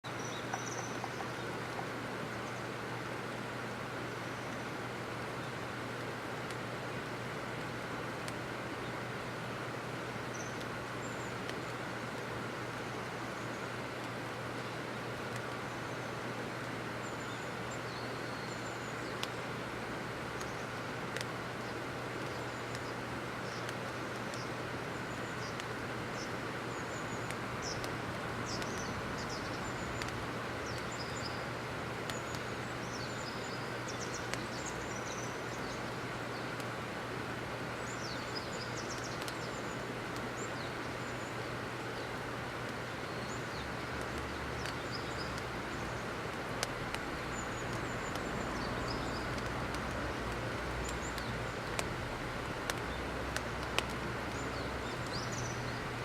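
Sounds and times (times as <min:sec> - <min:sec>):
outdoor background noise: 0:00.0 - 0:56.0.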